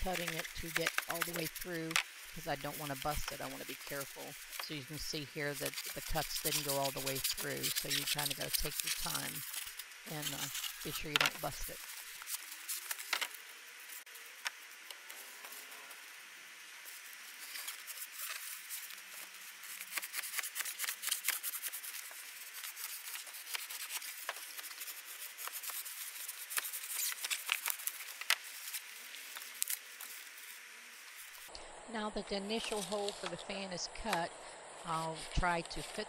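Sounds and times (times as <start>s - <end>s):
serrated knife sawing styrofoam: 5.5s - 13.0s, 17.4s - 28.9s.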